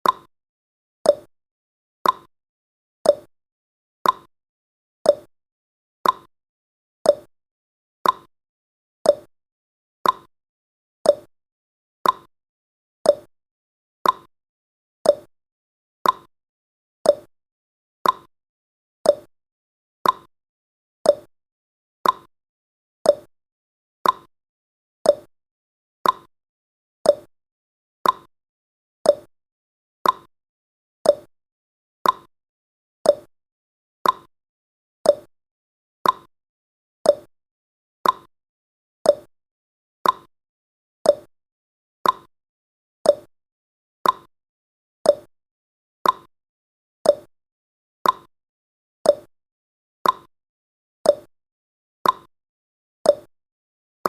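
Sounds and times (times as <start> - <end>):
clock ticking: 34.0 - 34.3, 42.0 - 42.3.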